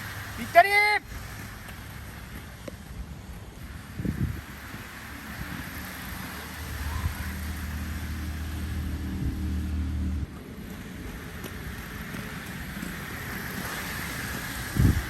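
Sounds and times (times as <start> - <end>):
wind noise: 1.0 - 15.0
low motor hum: 3.6 - 15.0.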